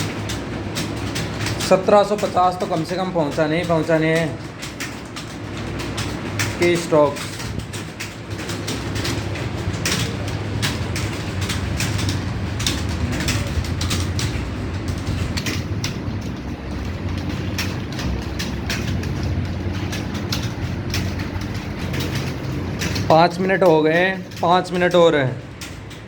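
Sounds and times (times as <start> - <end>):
keyboards clattering: 0.0 - 26.0
steady low hum: 0.0 - 26.0.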